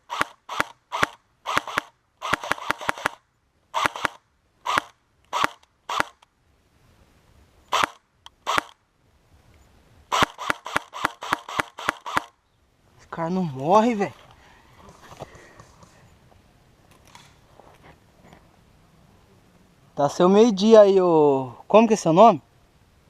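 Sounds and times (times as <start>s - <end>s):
airsoft guns firing: 0.0s - 3.2s, 3.8s - 6.2s, 10.1s - 12.3s.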